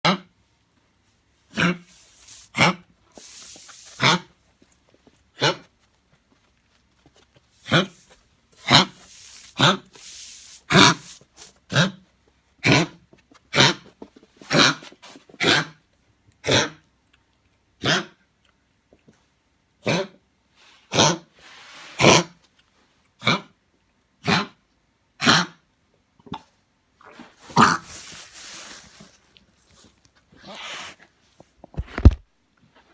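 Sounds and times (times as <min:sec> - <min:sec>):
dog reverse sneezing: 0:01.5 - 0:04.3, 0:07.6 - 0:12.0, 0:30.4 - 0:31.0.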